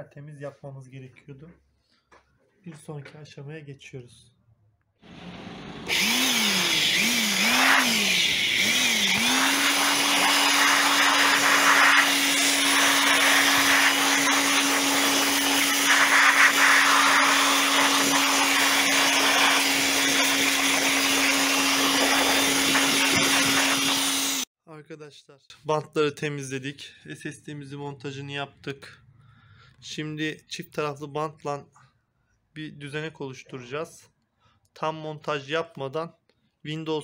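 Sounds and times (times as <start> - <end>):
electric blower whining: 5.0 - 24.5.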